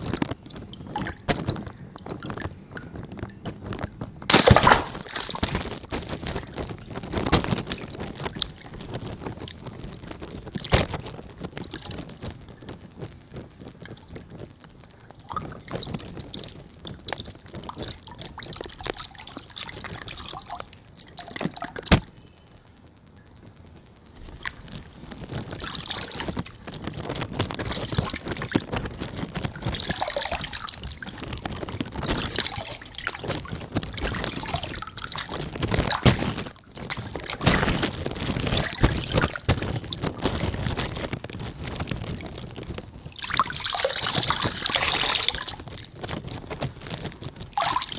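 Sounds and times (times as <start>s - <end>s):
water balloons bursting: 0.0s - 12.4s, 24.4s - 47.9s
water pouring and trickling: 0.0s - 22.3s, 24.2s - 47.9s.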